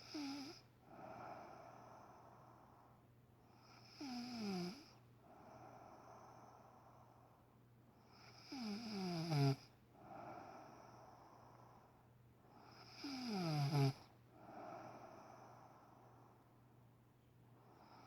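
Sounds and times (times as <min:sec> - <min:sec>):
quiet breathing: 0:00.0 - 0:18.0
woman snoring loudly: 0:08.4 - 0:09.6, 0:13.0 - 0:14.0.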